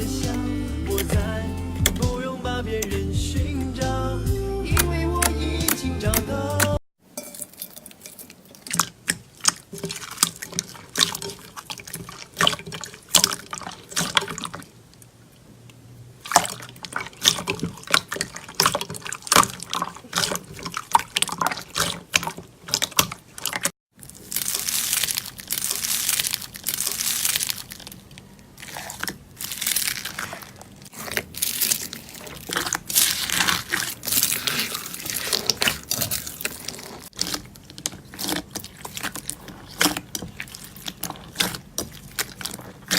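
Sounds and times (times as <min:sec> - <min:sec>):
slime squelching and clicking: 0:08.1 - 0:15.1, 0:16.2 - 0:42.9.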